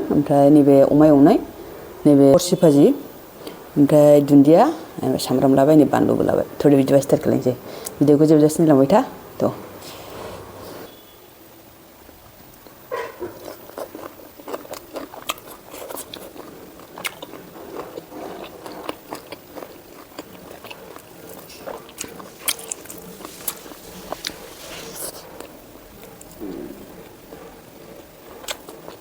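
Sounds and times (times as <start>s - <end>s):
person chewing food: 12.5s - 29.0s
wet mouth clicks and crunches: 13.3s - 26.6s, 28.3s - 29.0s.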